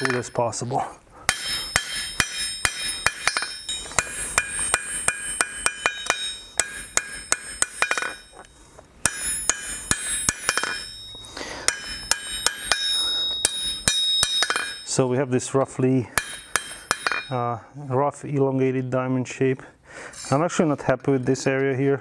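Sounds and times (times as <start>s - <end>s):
hammer striking steel on anvil: 0.0s - 0.5s, 1.3s - 15.1s, 16.1s - 17.5s.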